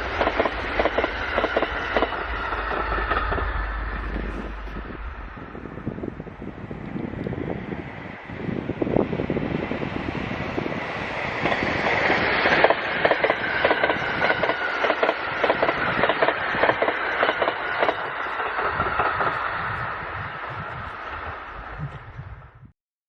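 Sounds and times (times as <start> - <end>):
train wheels clattering on rails: 0.0 - 6.0, 10.5 - 22.2.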